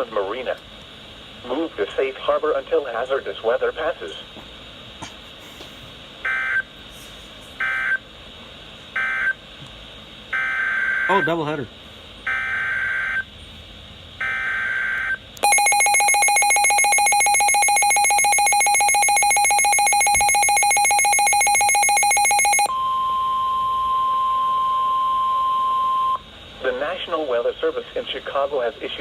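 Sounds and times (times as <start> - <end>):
steady warning alarm tone: 6.2 - 6.7, 7.6 - 8.0, 9.0 - 9.4, 10.3 - 11.6, 12.3 - 13.3, 14.2 - 26.3
pulsing electronic alarm tone: 12.3 - 13.3, 14.2 - 26.2.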